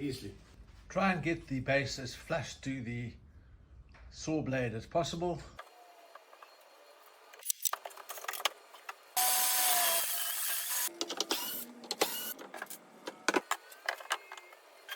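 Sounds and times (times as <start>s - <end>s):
power tool motor running: 9.2s - 12.4s.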